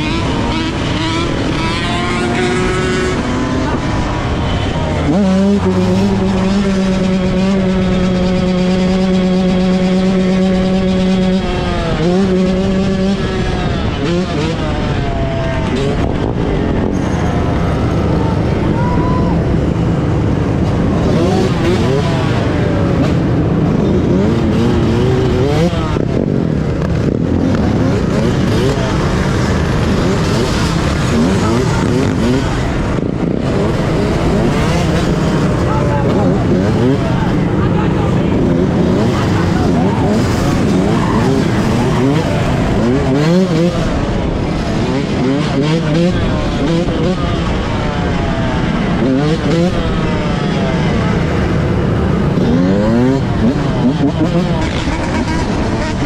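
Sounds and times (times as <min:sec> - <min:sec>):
engine revving: 0:00.0 - 0:56.0
vehicle engines running: 0:00.0 - 0:56.0.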